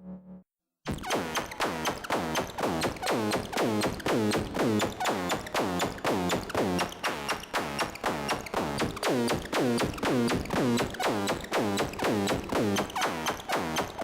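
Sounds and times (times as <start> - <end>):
synthesizer plucked notes: 0.0 - 0.4.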